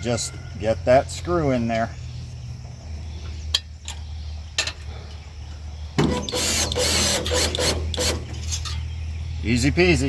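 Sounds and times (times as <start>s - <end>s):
cordless drill driving screw: 6.0s - 8.8s.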